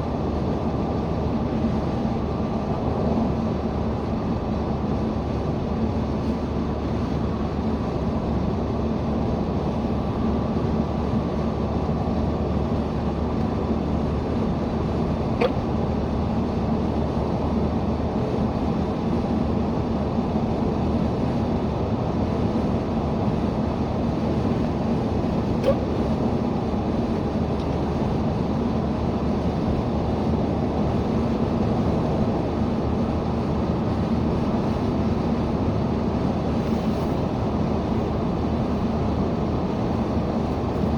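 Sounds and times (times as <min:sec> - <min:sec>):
car road and engine noise: 0:00.0 - 0:40.9
person hiccuping: 0:15.3 - 0:15.8, 0:25.6 - 0:25.9.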